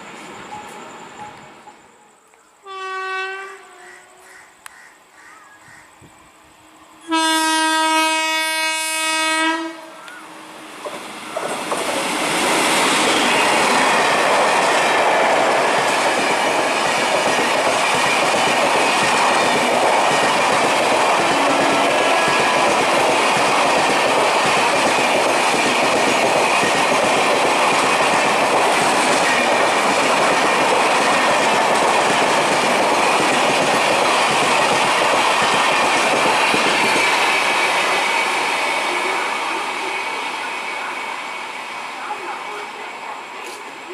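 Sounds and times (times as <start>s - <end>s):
train wheels rushing on rail: 0.0s - 1.8s, 6.0s - 43.9s
train horn blast: 2.6s - 4.2s, 7.0s - 10.1s, 21.2s - 22.9s.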